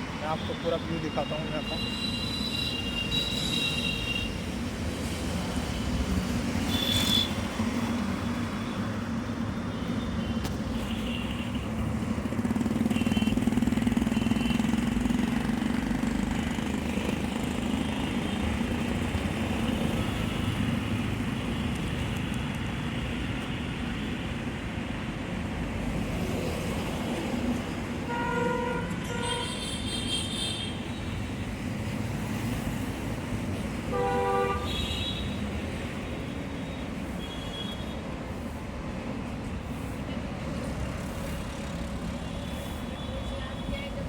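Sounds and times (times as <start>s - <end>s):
road traffic rumble: 0.0s - 44.0s
vehicle horn honking: 28.1s - 30.8s, 33.9s - 35.4s.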